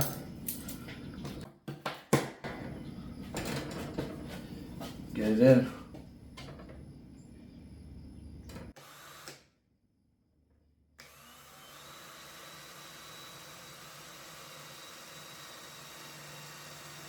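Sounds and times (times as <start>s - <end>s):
faint hum: 2.5s - 8.7s.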